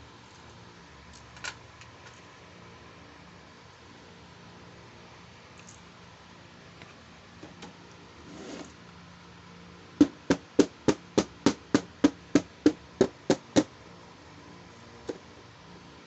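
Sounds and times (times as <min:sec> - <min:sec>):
sharp taps or knocks: 0:10.0 - 0:13.7.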